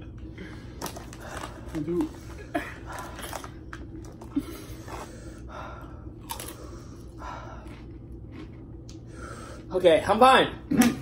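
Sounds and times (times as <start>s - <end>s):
person gasping breaths: 4.3s - 7.7s.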